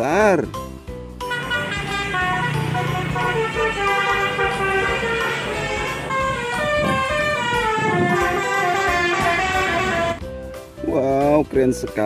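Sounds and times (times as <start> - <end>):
melodic bus horn: 1.2 - 10.2.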